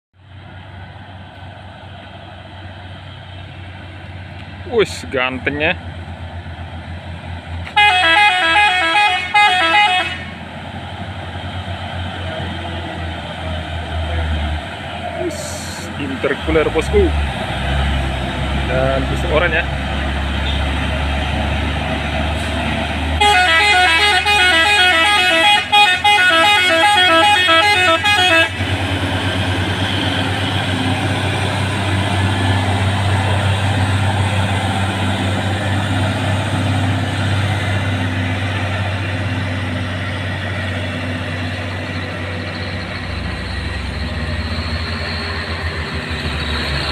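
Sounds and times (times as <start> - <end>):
heavy vehicle engine humming: 0.2 - 46.9
musical horn warbling tune: 7.7 - 10.4, 23.2 - 28.6.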